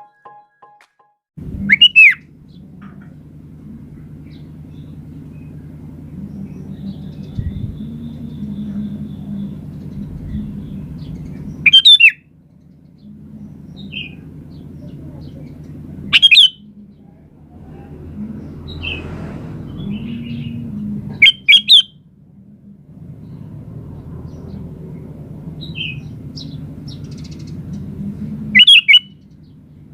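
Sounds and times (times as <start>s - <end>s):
steady low rumble: 1.4s - 29.9s
bird calling with bubbly notes: 1.6s - 2.3s, 11.6s - 12.2s, 16.1s - 16.6s, 21.2s - 21.9s, 28.5s - 29.2s.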